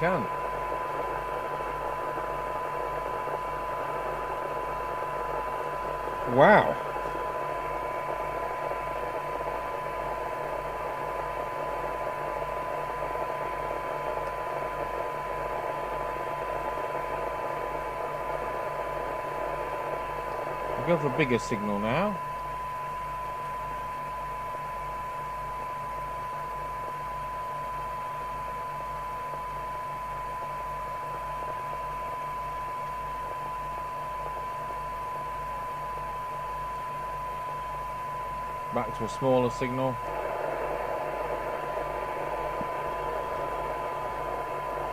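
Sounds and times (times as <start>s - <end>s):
radio receiver hiss: 0.0s - 22.6s, 31.2s - 44.9s
steady test tone from loudspeaker: 0.0s - 26.5s, 27.1s - 44.9s
low pulsing hum: 0.0s - 44.9s
steady test tone: 34.2s - 44.9s.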